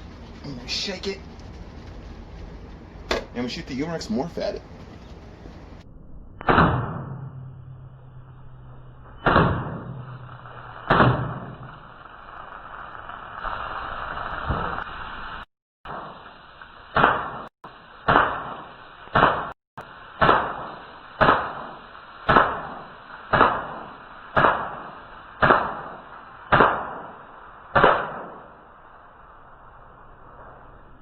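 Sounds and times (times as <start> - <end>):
airgun shots cracking: 6.4 - 7.4, 9.2 - 11.8, 16.9 - 17.5, 18.1 - 19.6, 20.2 - 28.6.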